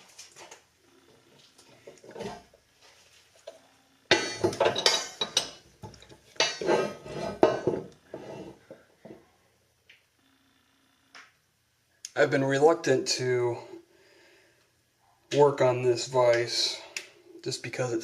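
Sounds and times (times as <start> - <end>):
metal objects clinking and clattering: 4.1 - 7.9.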